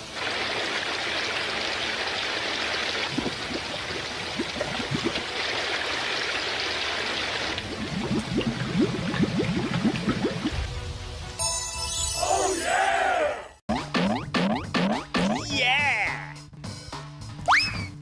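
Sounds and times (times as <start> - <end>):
rushing water: 0.0 - 11.1
bubbling gurgles: 0.4 - 10.7.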